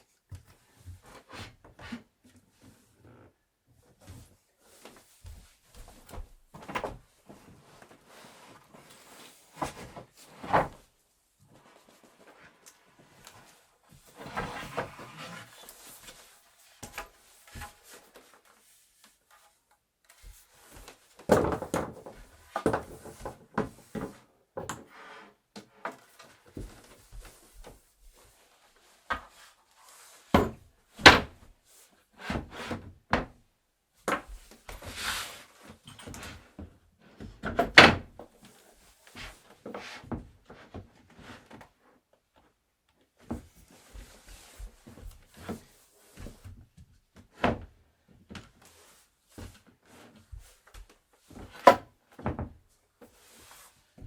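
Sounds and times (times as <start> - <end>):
wood scraping and rustling: 14.1 - 18.4.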